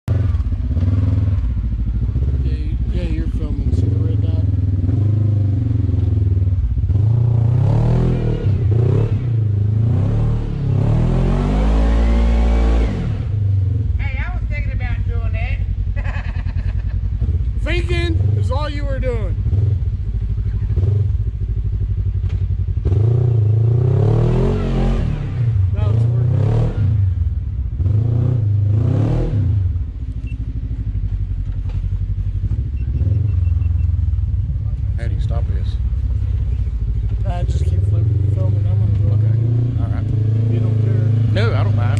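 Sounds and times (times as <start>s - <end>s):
utility vehicle engine revving: 0.0s - 41.9s
short beeps: 30.2s - 30.5s, 32.7s - 34.0s.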